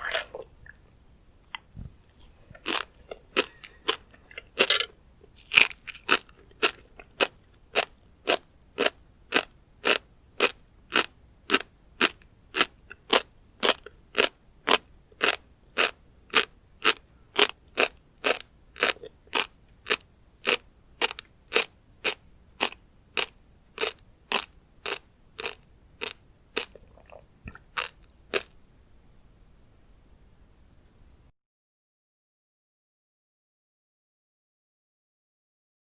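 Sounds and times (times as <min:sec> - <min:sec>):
crisp crunching chews: 0:00.0 - 0:28.5.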